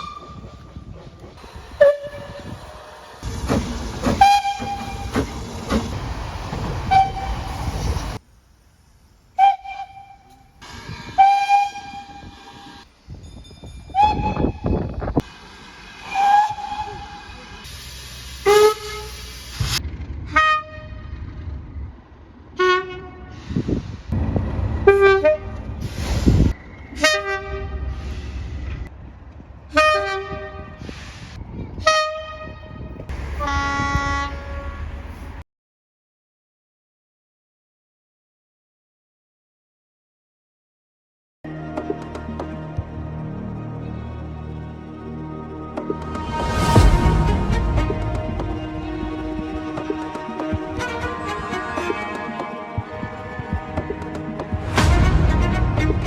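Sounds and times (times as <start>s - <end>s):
passing train rumble: 0.0s - 35.4s, 41.5s - 56.0s
train horn blasts: 4.2s - 5.2s, 6.9s - 7.6s, 11.1s - 12.6s, 16.1s - 17.4s, 18.4s - 19.3s, 20.3s - 21.1s, 22.6s - 23.4s, 26.9s - 28.0s, 29.7s - 30.9s, 31.8s - 35.2s, 46.2s - 56.0s.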